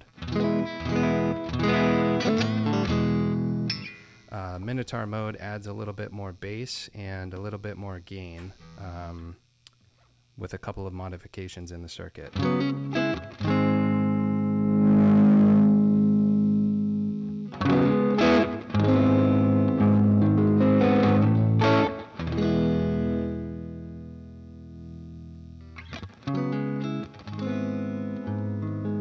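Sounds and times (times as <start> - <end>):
overdriven electric guitar chords: 0.0 - 4.4, 12.3 - 29.0.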